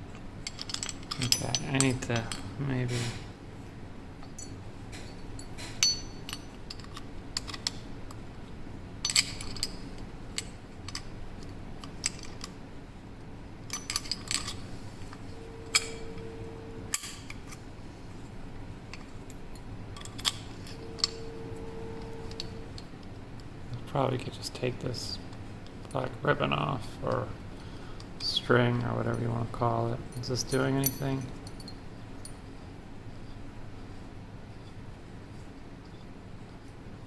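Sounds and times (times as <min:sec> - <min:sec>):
metal lock and keys clicking: 0:00.4 - 0:02.5, 0:09.0 - 0:09.8, 0:13.7 - 0:14.6, 0:15.5 - 0:17.6, 0:18.9 - 0:22.9, 0:30.2 - 0:31.8.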